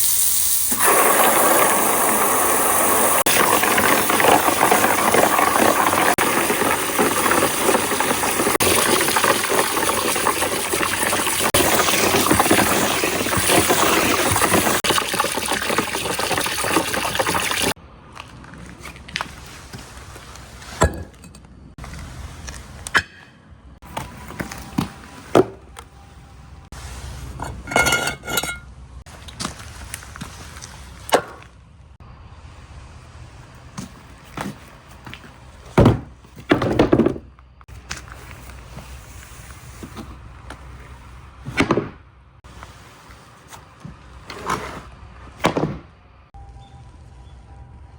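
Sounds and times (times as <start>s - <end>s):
marbles rolling and clicking: 0.0s - 17.8s
water rushing down a track: 0.0s - 17.8s
glass clinking on glass: 27.7s - 28.6s.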